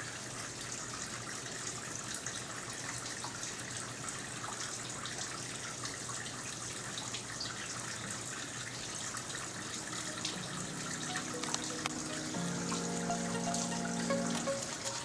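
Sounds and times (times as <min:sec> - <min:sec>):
water rushing: 0:08.5 - 0:15.0.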